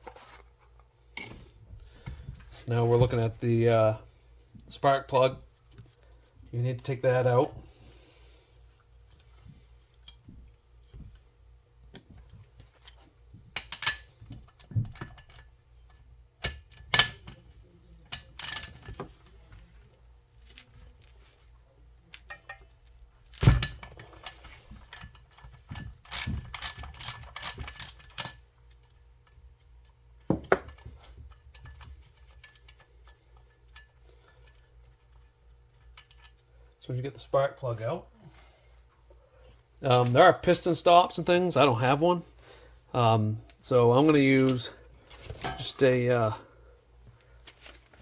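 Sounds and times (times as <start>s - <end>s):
wrench clicking and knocking on metal: 18.1s - 19.1s, 24.2s - 28.4s.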